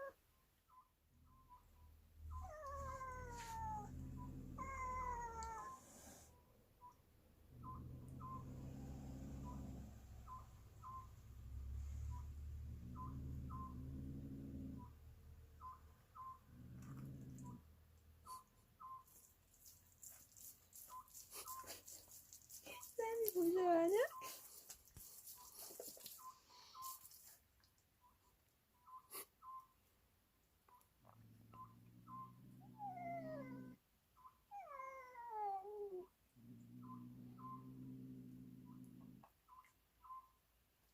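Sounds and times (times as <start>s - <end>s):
cat chirping: 0.0s - 6.2s
faint high chirps: 0.0s - 16.6s, 18.2s - 19.4s, 28.0s - 30.0s, 30.7s - 34.5s, 38.6s - 40.5s.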